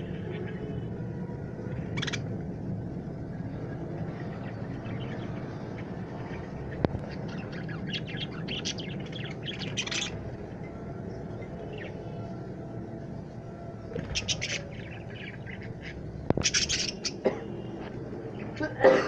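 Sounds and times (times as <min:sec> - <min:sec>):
low background hum: 0:00.0 - 0:19.0
budgerigars chirping: 0:01.8 - 0:02.3, 0:07.0 - 0:10.2, 0:14.0 - 0:17.2.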